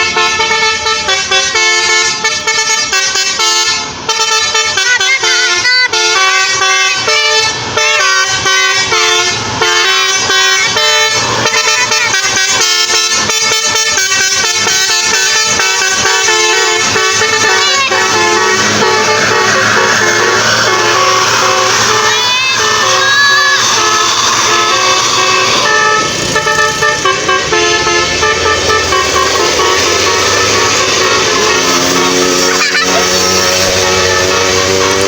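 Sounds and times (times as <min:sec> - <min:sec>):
bus horn playing melody: 0:00.0 - 0:35.0.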